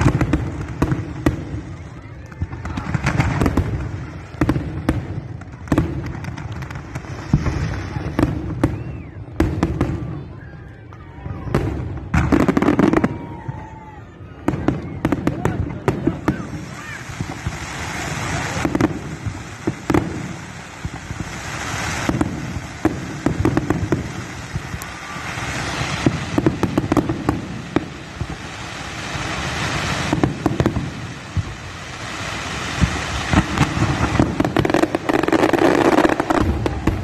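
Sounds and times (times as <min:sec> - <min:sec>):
firework bangs and pops: 0:00.0 - 0:10.3, 0:10.9 - 0:37.0.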